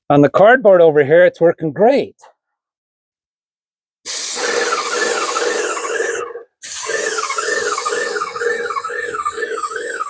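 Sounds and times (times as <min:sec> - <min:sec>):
paint spray gun hissing: 0:04.1 - 0:10.0
warbling whistle: 0:04.1 - 0:10.0.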